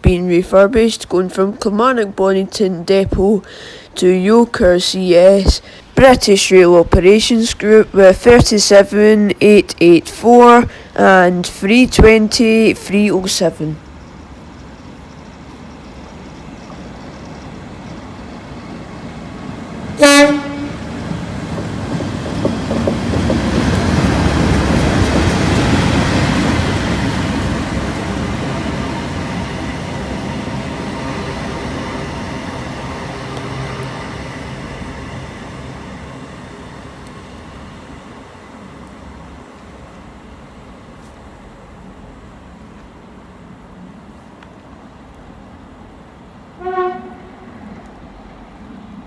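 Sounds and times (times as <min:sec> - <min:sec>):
diesel train passing: 0:00.0 - 0:49.0
train horn blast: 0:20.0 - 0:21.0, 0:46.5 - 0:47.6.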